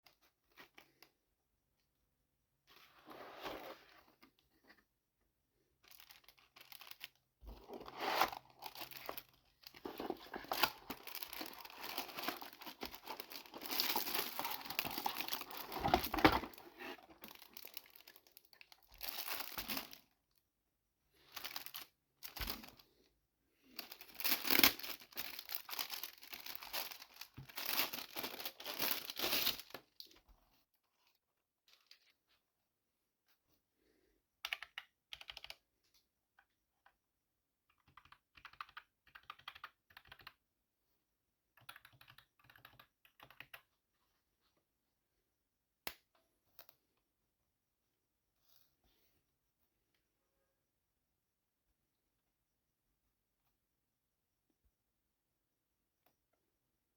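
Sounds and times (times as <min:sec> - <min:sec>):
packaging crinkling and tearing: 0:05.9 - 0:20.0, 0:23.8 - 0:29.8.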